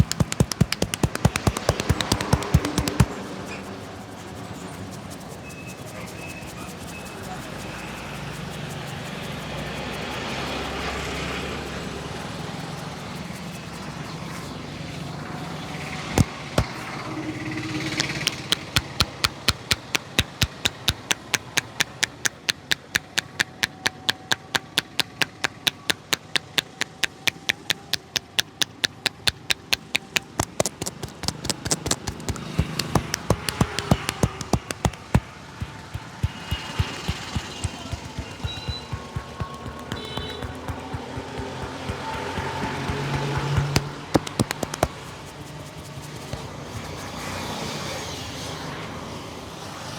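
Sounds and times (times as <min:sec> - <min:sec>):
hands tapping on a head: 0:00.0 - 0:03.2, 0:16.0 - 0:16.9, 0:17.8 - 0:47.2
street background noise: 0:00.0 - 0:49.9.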